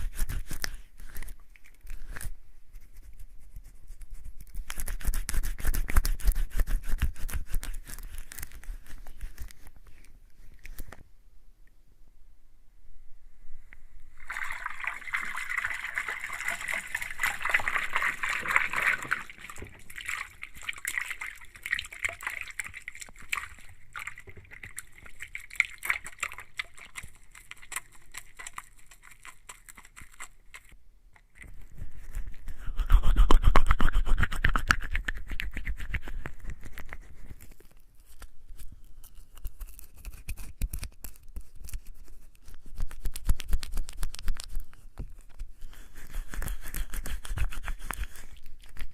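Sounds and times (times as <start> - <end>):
soapy hands rubbing together: 2.8 - 9.6, 14.2 - 30.8, 45.7 - 48.9.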